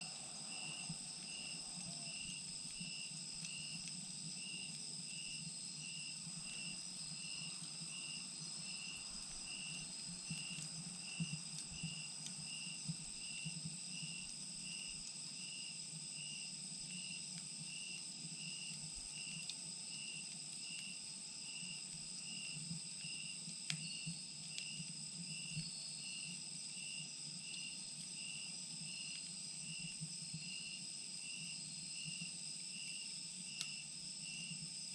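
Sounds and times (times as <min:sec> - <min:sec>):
wood fire crackling: 0:00.0 - 0:16.0, 0:16.6 - 0:25.7
insect chirping: 0:00.0 - 0:34.9
insects trilling: 0:00.0 - 0:34.9.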